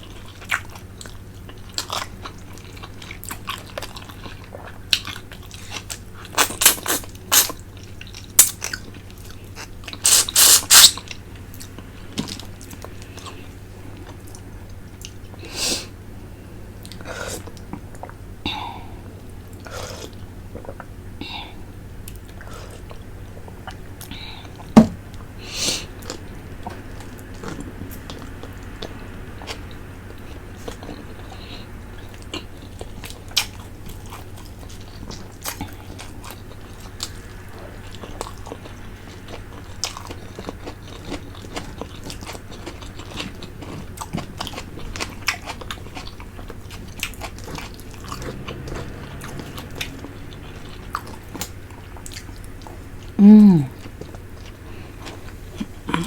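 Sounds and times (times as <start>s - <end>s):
chewing and sucking: 0.1s - 15.9s, 25.5s - 56.0s.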